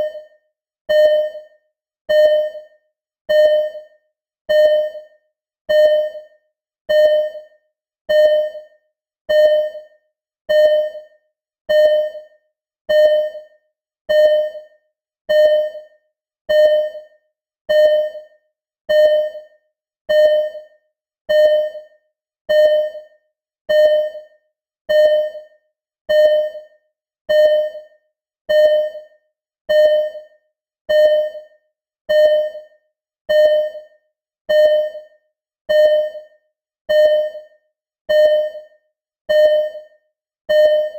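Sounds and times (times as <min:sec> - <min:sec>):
heart monitor beeping: 0:00.0 - 0:00.3, 0:00.9 - 0:01.5, 0:02.1 - 0:02.7, 0:03.3 - 0:03.9, 0:04.5 - 0:05.1, 0:05.7 - 0:06.3, 0:06.9 - 0:07.5, 0:08.1 - 0:08.7, 0:09.3 - 0:09.9, 0:10.5 - 0:11.1, 0:11.7 - 0:12.3, 0:12.9 - 0:13.5, 0:14.1 - 0:14.7, 0:15.3 - 0:15.9, 0:16.5 - 0:17.1, 0:17.7 - 0:18.3, 0:18.9 - 0:19.5, 0:20.1 - 0:20.7, 0:21.3 - 0:21.9, 0:22.5 - 0:23.1, 0:23.7 - 0:24.3, 0:24.9 - 0:25.5, 0:26.1 - 0:26.7, 0:27.3 - 0:27.9, 0:28.5 - 0:29.1, 0:29.7 - 0:30.3, 0:30.9 - 0:31.5, 0:32.1 - 0:32.7, 0:33.3 - 0:33.9, 0:34.5 - 0:35.1, 0:35.7 - 0:37.5, 0:38.1 - 0:40.9.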